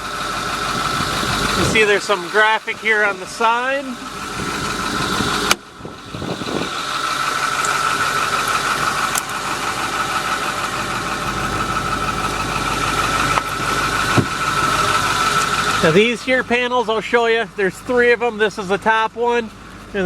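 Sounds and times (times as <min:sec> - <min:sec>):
constant high whine: 0:00.0 - 0:20.0
diesel engine idling: 0:00.0 - 0:20.0.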